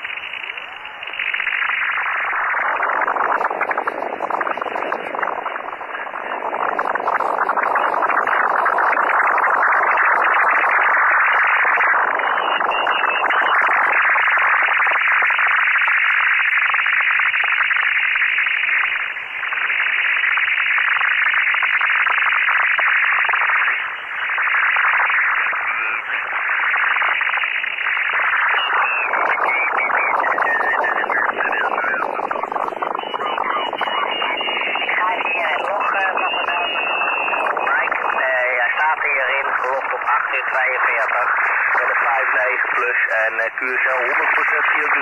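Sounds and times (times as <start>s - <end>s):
dense hiss-like radio signal: 0.0s - 45.0s.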